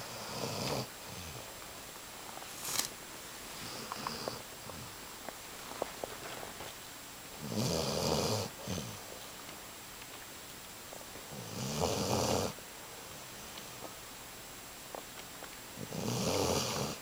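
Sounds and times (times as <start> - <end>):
dog snoring: 0.0 - 1.4, 3.6 - 4.9, 7.4 - 9.0, 11.3 - 12.6, 15.8 - 17.0.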